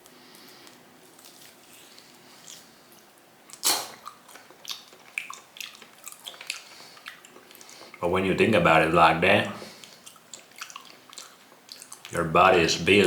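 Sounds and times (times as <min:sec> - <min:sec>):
person chewing raw meat: 0:00.0 - 0:08.0, 0:09.5 - 0:12.2
clicking and squishing mouth sounds: 0:03.5 - 0:08.0, 0:09.6 - 0:12.2
sharp wet mouth smack: 0:03.6 - 0:04.0.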